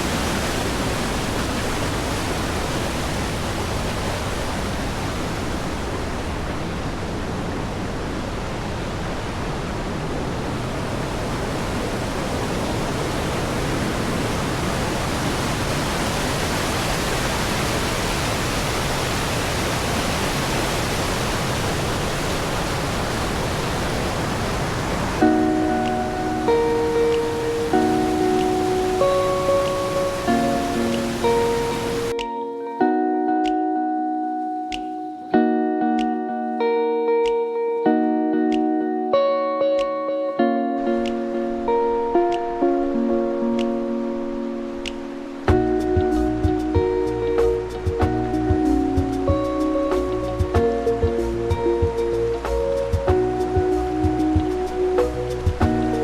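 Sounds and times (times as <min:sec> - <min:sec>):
whitewater rushing over rocks: 0:00.0 - 0:32.2.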